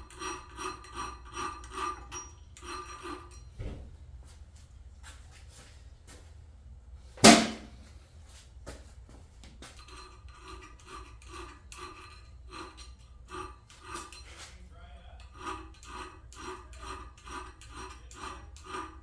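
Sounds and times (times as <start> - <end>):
file rasping on steel blade: 0.0 - 3.5, 9.6 - 19.0
sharp loud knock: 7.2 - 7.8.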